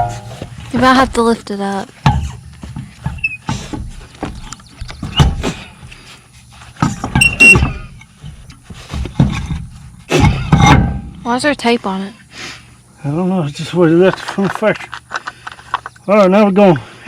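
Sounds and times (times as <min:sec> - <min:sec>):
wheel clunks and knocks: 0:00.0 - 0:01.4, 0:02.0 - 0:06.0, 0:06.6 - 0:11.2
tire scraping: 0:00.0 - 0:11.1.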